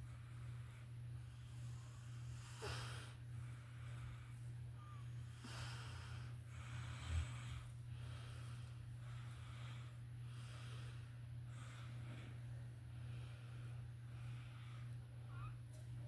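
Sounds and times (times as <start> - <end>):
woman snoring breaths: 0.0 - 12.4
steady low hum: 0.0 - 16.0.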